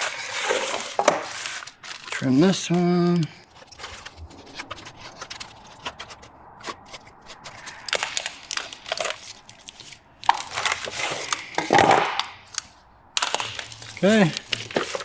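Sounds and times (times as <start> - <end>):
foil sheet crinkling: 0.0 - 15.0.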